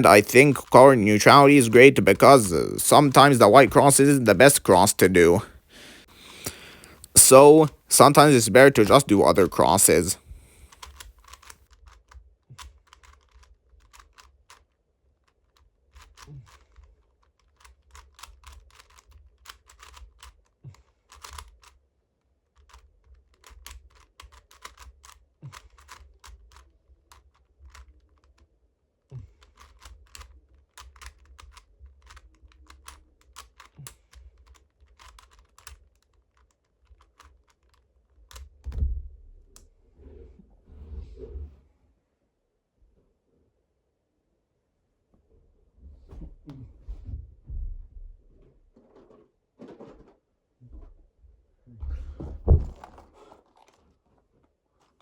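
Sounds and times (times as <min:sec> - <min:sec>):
puzzle cube clicking: 0:00.0 - 0:05.4, 0:06.3 - 0:12.0, 0:16.0 - 0:20.4, 0:21.0 - 0:21.8, 0:22.6 - 0:28.3, 0:29.4 - 0:38.4
loud thump: 0:51.9 - 0:52.9.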